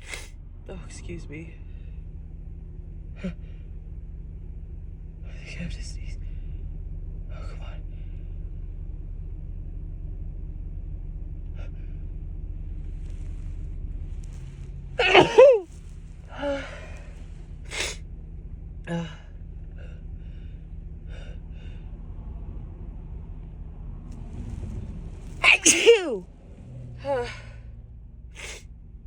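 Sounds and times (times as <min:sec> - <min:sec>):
low background rumble: 0:00.0 - 0:29.0
sniffing breaths: 0:15.0 - 0:15.6
woman sneezing: 0:15.0 - 0:15.7, 0:25.4 - 0:26.2, 0:28.4 - 0:28.6.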